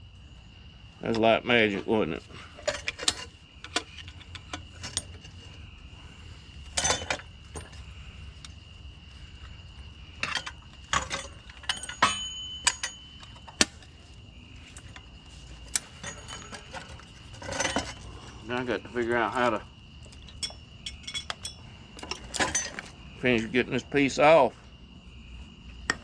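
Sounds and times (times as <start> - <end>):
metal tools clinking: 1.1 - 5.3, 6.7 - 7.9, 10.2 - 13.9, 14.7 - 24.0.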